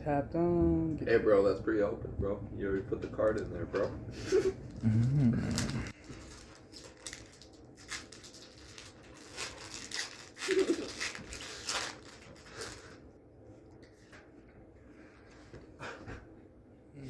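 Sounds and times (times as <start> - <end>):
foil wrapper crinkling: 3.8 - 13.1.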